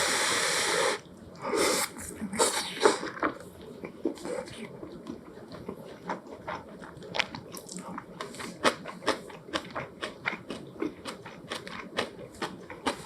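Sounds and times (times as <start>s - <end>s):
person chewing food: 0.9s - 13.0s.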